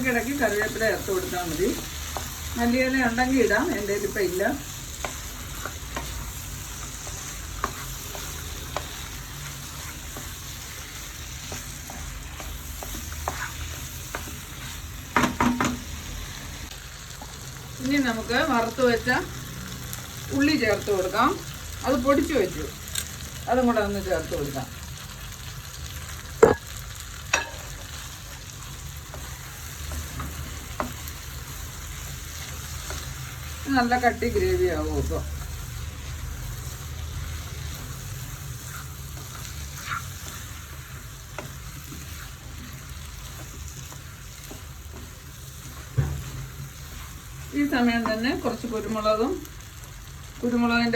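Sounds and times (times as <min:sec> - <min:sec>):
chicken sizzling in a pan: 0:00.0 - 0:50.9
spatula tapping and scraping pan: 0:04.3 - 0:15.9, 0:26.4 - 0:26.7, 0:27.3 - 0:28.0, 0:38.6 - 0:47.1
spoon knocking against pan: 0:15.2 - 0:15.8, 0:26.4 - 0:26.7, 0:27.3 - 0:27.6.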